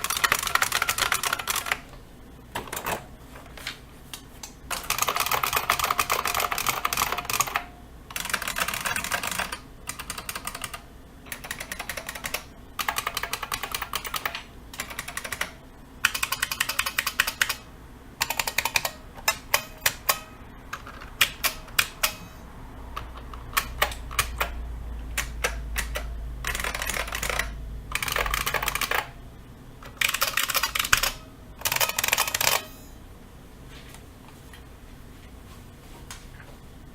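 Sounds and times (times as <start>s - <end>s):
clicky keyboard typing: 0.0s - 1.9s, 4.7s - 17.6s, 18.2s - 22.3s, 23.0s - 29.1s, 29.8s - 32.8s.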